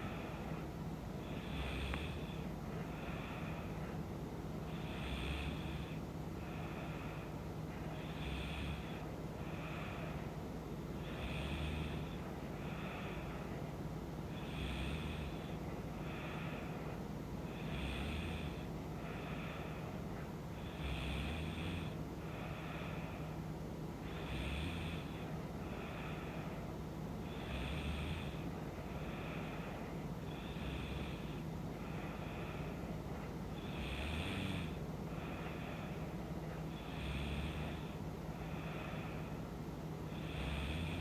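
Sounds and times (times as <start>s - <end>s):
woman snoring: 1.2s - 4.0s, 4.7s - 7.2s, 7.9s - 10.2s, 11.0s - 13.3s, 14.3s - 16.6s, 17.5s - 19.8s, 20.6s - 23.3s, 24.0s - 26.4s, 27.2s - 29.6s, 30.3s - 32.8s, 33.5s - 35.9s, 36.7s - 39.4s, 40.1s - 41.0s.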